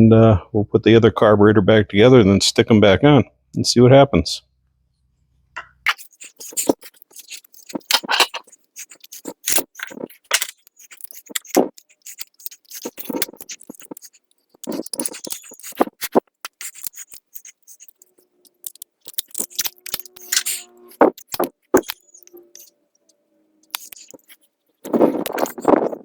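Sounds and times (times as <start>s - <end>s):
small metal parts clicking and scraping: 5.9s - 26.0s.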